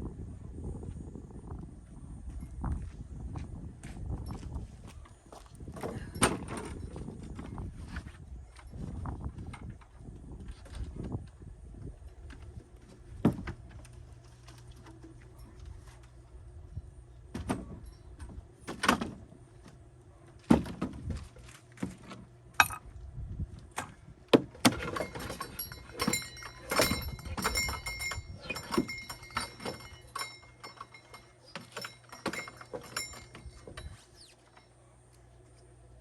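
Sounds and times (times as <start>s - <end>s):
steady low hum: 0.0s - 36.0s
ringing metallic rattles: 24.6s - 34.7s.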